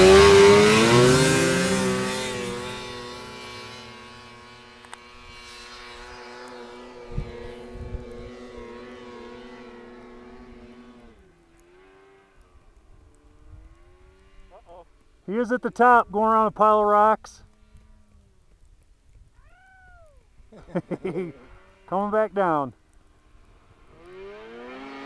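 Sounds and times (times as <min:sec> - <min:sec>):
off-road vehicle engine revving: 0:00.0 - 0:14.9, 0:20.6 - 0:22.3, 0:23.3 - 0:25.0.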